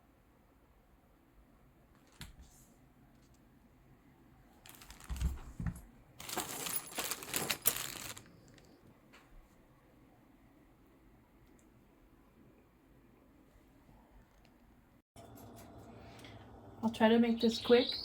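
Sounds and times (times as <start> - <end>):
crinkling and clattering: 4.6 - 8.8.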